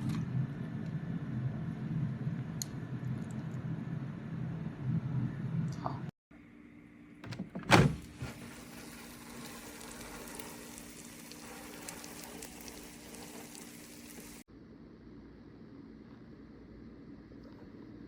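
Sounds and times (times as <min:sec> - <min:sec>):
faint crackles: 0:08.3 - 0:14.4.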